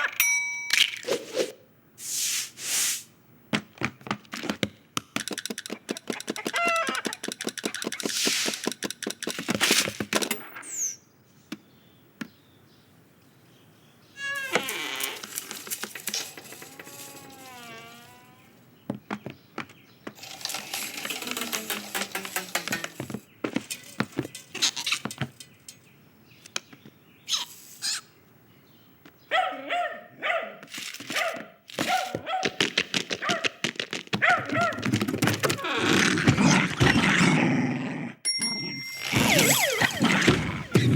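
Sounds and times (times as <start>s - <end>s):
rapid clicks and scrabbling: 4.1s - 10.4s, 14.4s - 17.8s, 19.6s - 25.9s, 30.7s - 35.8s
squeaky falling pitched sound: 14.2s - 18.5s, 38.6s - 40.9s.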